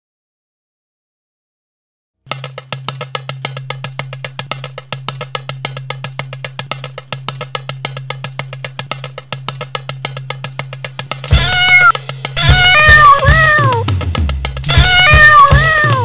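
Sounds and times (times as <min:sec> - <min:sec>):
woodblock-like ticking: 0:02.3 - 0:16.0.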